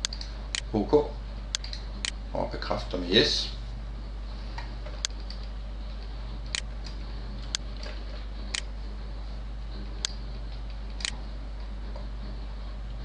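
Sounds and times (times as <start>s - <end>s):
computer mouse clicking: 0.0s - 0.7s, 1.5s - 2.2s, 5.0s - 5.5s
low electrical hum: 0.0s - 13.0s.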